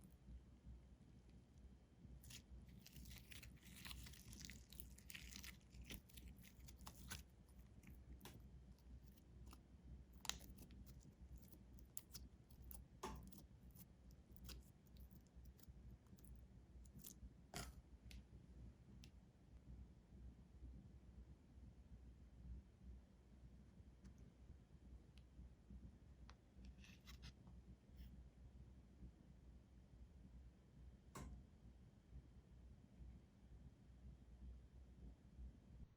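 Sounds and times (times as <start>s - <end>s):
slime popping: 2.2s - 8.4s
slime squished by hand: 2.2s - 16.3s.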